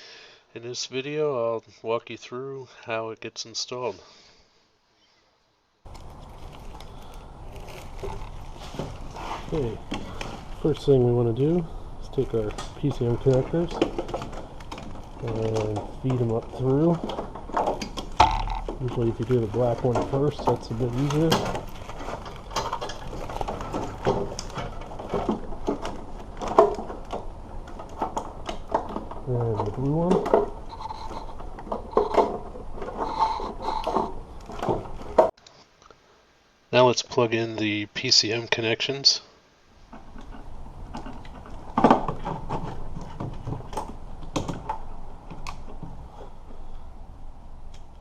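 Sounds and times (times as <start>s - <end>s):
plastic connectors clicking and scraping: 5.9s - 35.6s
wiring harness rustling: 5.9s - 35.7s, 39.8s - 48.0s.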